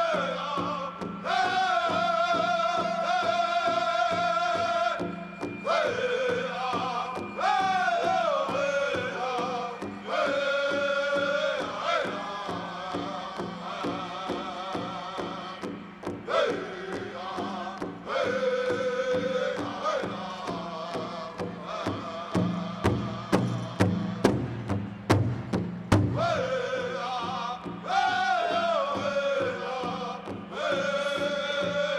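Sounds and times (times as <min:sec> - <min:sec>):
group singing high-pitched chant: 0:00.0 - 0:24.4, 0:26.1 - 0:31.9
large drum beating: 0:20.6 - 0:30.6.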